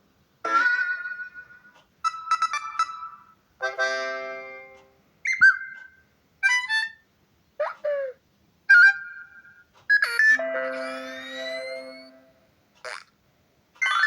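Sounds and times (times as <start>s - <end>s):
phone ringtones and alert chimes: 10.0s - 12.4s.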